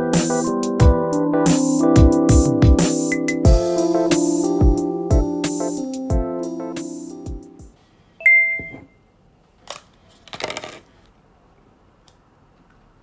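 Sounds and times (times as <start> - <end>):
background music with a beat: 0.0 - 7.7
bright ding: 8.2 - 9.0.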